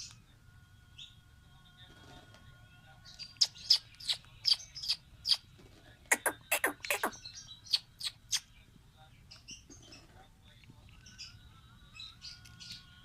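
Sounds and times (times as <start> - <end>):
parrot chirping and squawking: 6.1 - 8.2.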